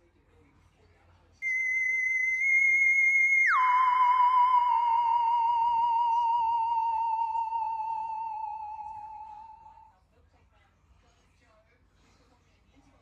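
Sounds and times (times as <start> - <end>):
cartoon falling whistle tone: 1.4 - 9.8.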